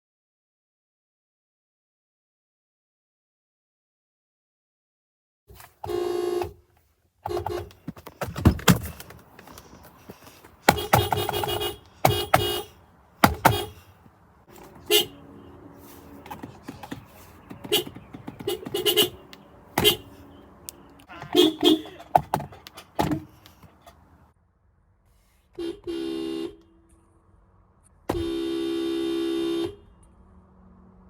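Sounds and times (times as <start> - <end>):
car horn honking: 5.6 - 24.2, 25.6 - 27.0, 28.1 - 30.1
sharp clicks and thumps: 7.2 - 13.8, 16.2 - 20.1, 21.0 - 24.0.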